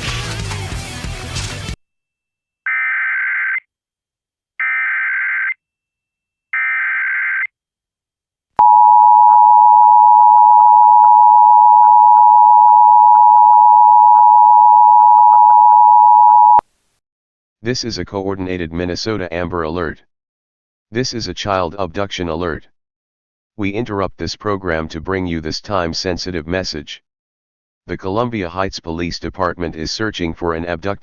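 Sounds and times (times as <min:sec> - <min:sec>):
two-tone attention signal: 0:08.6 - 0:16.6.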